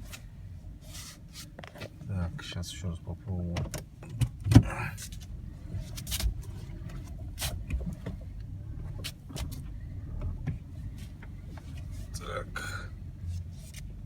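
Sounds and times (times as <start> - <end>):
car engine humming: 0.0 - 14.0
steering knocks and clicks: 3.4 - 12.6.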